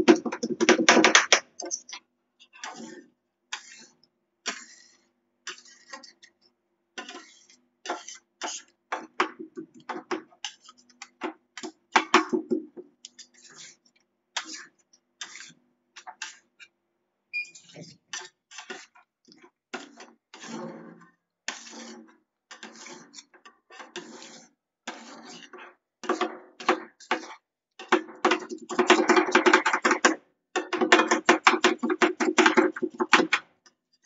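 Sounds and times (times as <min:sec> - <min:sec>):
spatulas scraping a cold plate: 0:00.0 - 0:11.8, 0:13.1 - 0:16.7, 0:17.5 - 0:19.0, 0:19.7 - 0:33.4
metal spatulas tapping: 0:26.0 - 0:33.4.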